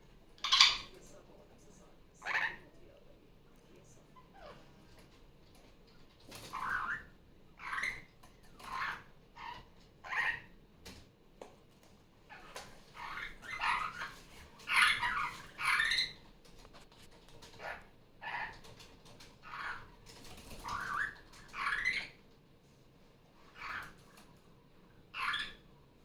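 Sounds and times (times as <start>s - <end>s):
parakeet harsh calls: 0.4s - 0.9s, 6.4s - 10.5s, 12.4s - 16.2s, 19.4s - 19.9s, 20.6s - 22.2s, 23.5s - 24.0s, 25.1s - 25.6s.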